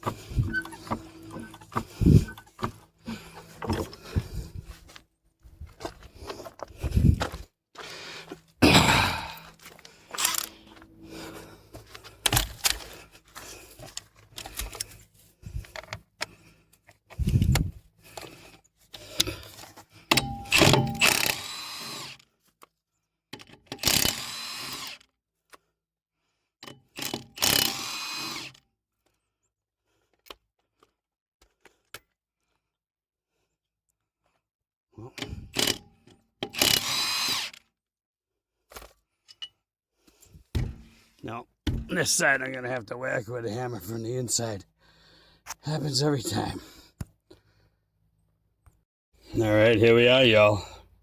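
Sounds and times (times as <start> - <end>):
impact wrench running: 0.0 - 4.5, 9.1 - 13.0
lug nuts clanking: 0.0 - 4.5.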